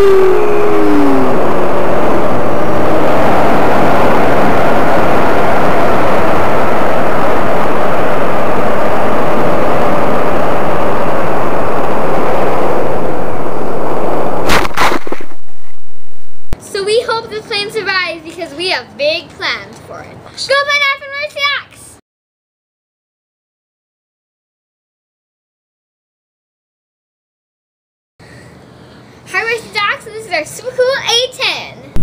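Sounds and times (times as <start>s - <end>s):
wavering motor whine: 0.0s - 16.6s
wind blasting microphone: 0.0s - 16.6s.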